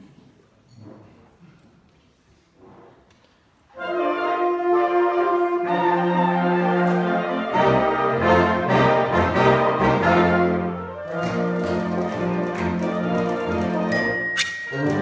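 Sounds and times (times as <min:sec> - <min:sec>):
orchestral strings and brass chords: 0:03.7 - 0:15.0.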